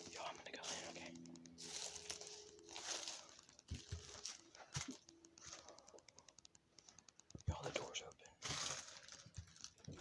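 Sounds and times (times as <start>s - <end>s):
footsteps crunching over debris: 1.6s - 5.0s.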